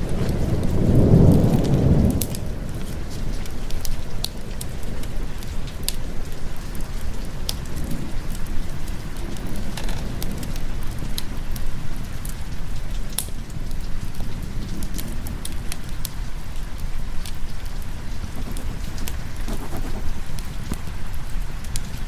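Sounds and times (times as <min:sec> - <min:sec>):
heavy rain: 0:00.0 - 0:22.0
fireplace crackling: 0:17.8 - 0:21.9.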